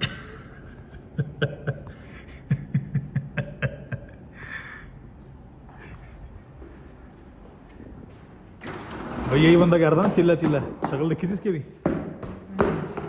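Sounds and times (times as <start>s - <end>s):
man laughing in short bursts: 0.0s - 4.8s.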